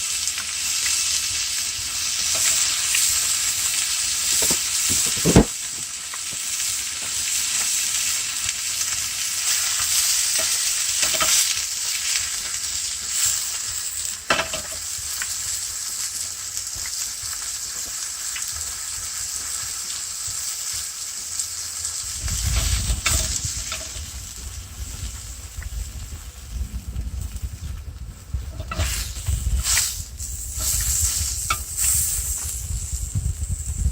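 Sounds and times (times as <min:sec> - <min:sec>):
food sizzling in a pan: 0:00.0 - 0:33.9
low rumble: 0:22.1 - 0:30.6.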